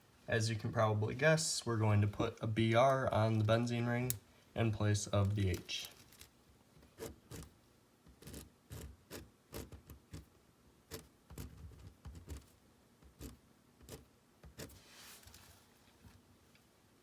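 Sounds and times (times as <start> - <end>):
soft rustle: 5.2 - 7.0, 14.6 - 16.7.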